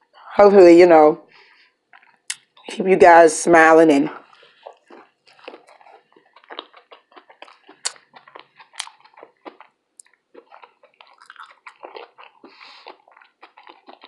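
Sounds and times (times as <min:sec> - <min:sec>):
person chewing fried food: 0:01.3 - 0:02.7, 0:04.2 - 0:14.0
sharp mouth clicks: 0:02.0 - 0:02.7, 0:04.3 - 0:09.2.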